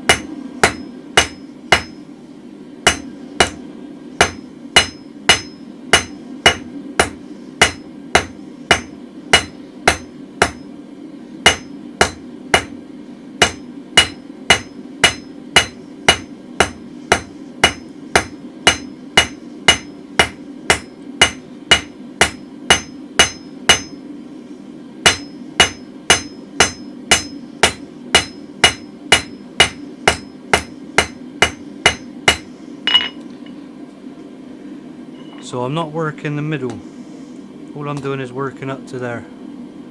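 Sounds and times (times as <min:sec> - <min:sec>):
hammer striking steel on anvil: 0:00.0 - 0:02.0, 0:02.8 - 0:10.7, 0:11.4 - 0:12.8, 0:13.4 - 0:24.0, 0:25.0 - 0:33.2
steady low hum: 0:00.0 - 0:39.9.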